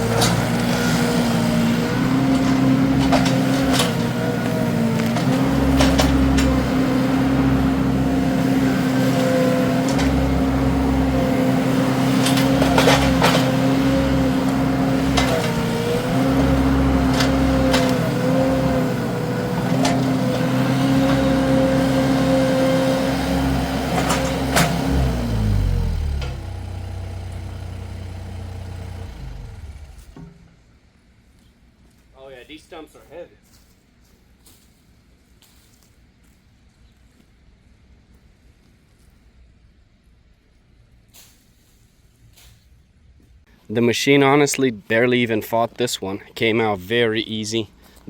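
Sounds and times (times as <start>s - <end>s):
skid steer engine at high revs: 0.0s - 30.4s.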